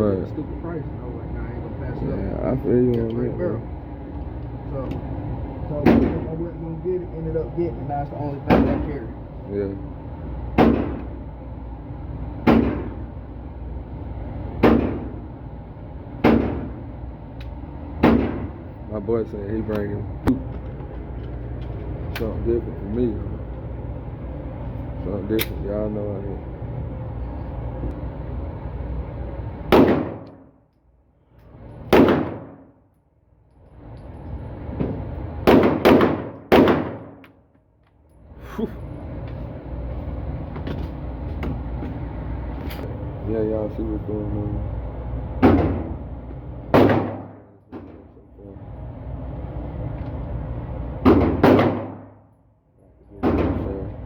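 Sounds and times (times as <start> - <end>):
gunshots with echo: 29.7 - 30.3, 31.9 - 32.7, 35.4 - 37.2, 46.7 - 47.4, 51.1 - 52.1.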